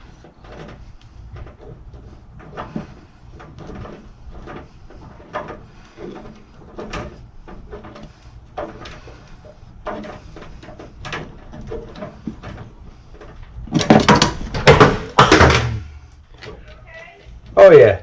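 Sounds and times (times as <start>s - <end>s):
tools and tubing knocking: 0.0s - 15.8s
tool falling and clattering: 9.8s - 16.0s.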